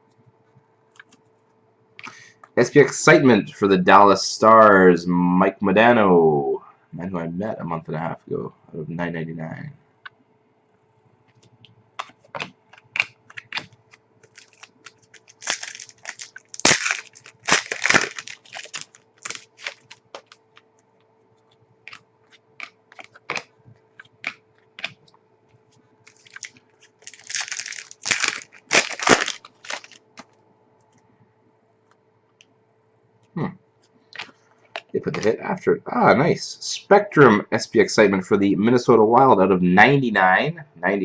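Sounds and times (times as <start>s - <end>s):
faint steady hum: 0.0s - 41.0s
cards rustling and sliding: 12.0s - 20.4s, 26.1s - 30.3s
wrappers crinkling and tearing: 12.7s - 20.6s, 22.6s - 23.5s, 26.1s - 30.3s.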